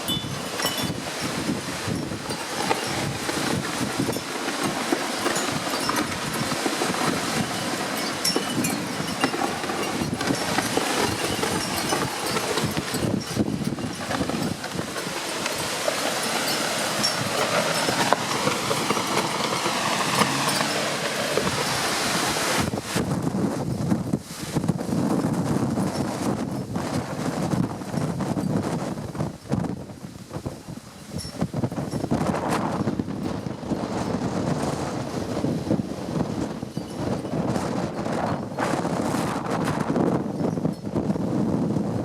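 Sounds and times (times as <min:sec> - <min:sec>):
strong wind on microphone: 0:00.0 - 0:42.0.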